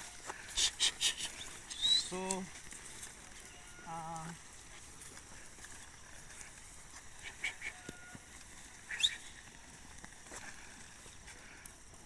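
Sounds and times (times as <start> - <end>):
faint bird chirps: 0.9 - 2.2, 8.9 - 9.4.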